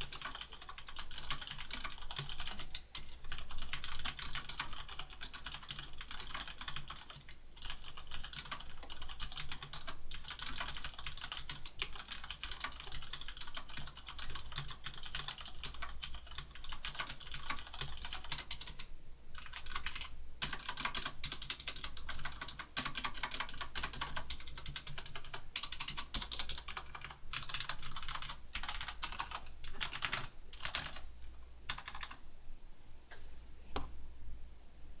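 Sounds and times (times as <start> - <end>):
mechanical keyboard typing: 0.0 - 31.0, 31.7 - 32.2
faint low hum: 0.0 - 35.0.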